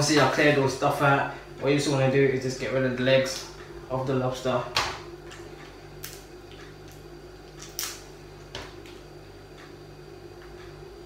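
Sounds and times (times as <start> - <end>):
steady low hum: 0.0 - 11.0
lobster shell cracking: 6.0 - 9.0.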